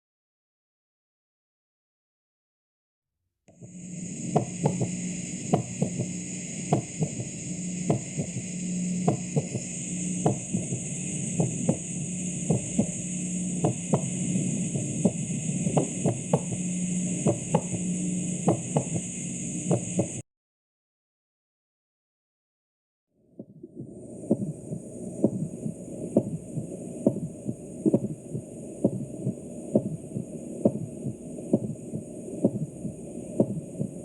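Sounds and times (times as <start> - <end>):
steady hum and hiss: 3.5 - 20.2, 23.7 - 34.0
heartbeat thuds: 4.3 - 13.0, 13.6 - 16.6, 17.2 - 19.1, 19.7 - 20.2, 23.4 - 34.0.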